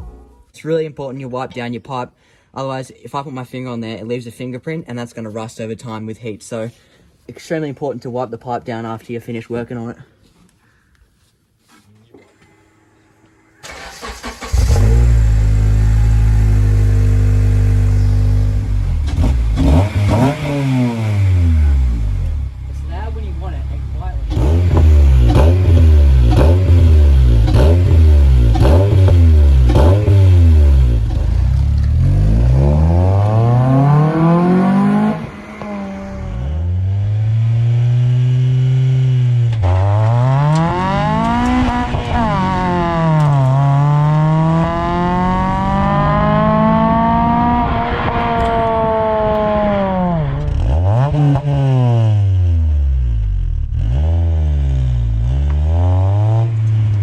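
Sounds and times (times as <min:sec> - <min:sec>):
car engine revving: 0:12.8 - 0:57.0.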